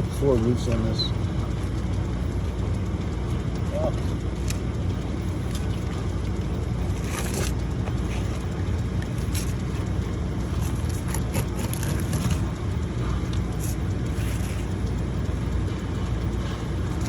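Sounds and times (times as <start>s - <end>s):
short scrapes and crunches: 10.5s - 12.6s.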